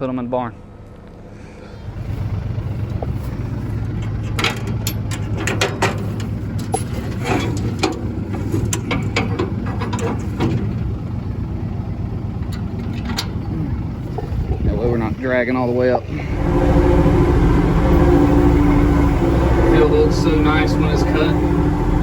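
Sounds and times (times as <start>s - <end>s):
vehicle engine running: 0.6s - 22.0s
short knocks and rattles: 3.9s - 11.0s.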